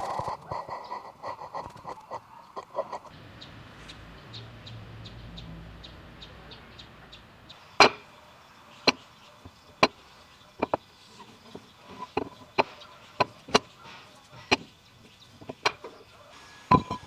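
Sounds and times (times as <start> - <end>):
sharp blows on wood: 7.8 - 17.0.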